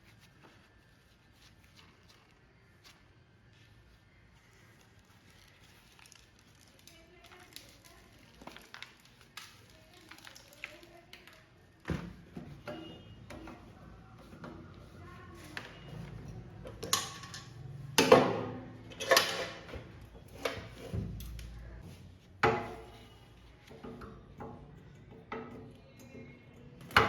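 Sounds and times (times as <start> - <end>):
tools and metal parts clinking: 16.8 - 17.6.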